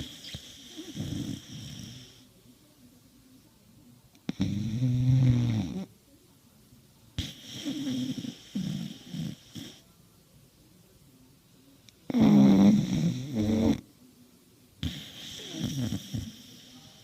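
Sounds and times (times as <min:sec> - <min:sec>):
pet snoring: 0:00.0 - 0:02.2, 0:04.3 - 0:05.9, 0:07.2 - 0:09.8, 0:12.1 - 0:13.8, 0:14.8 - 0:17.0.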